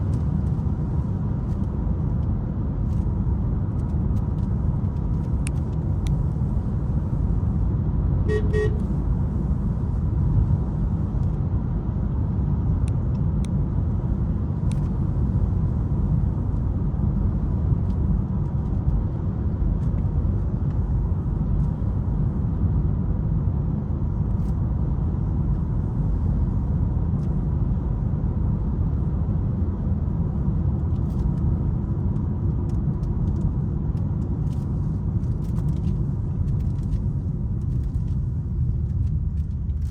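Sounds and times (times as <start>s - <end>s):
road and engine rumble in car: 0.0s - 39.9s
car horn toot: 8.3s - 9.0s.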